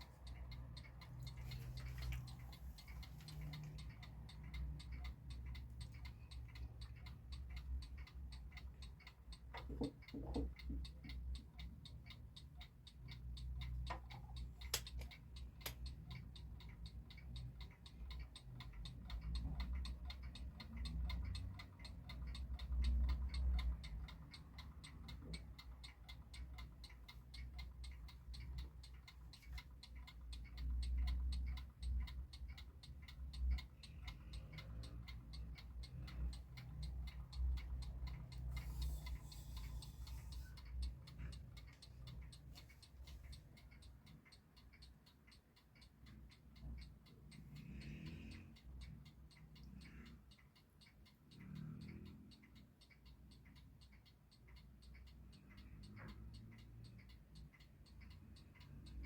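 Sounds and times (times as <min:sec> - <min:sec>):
alarm clock ticking: 0:00.0 - 0:59.0.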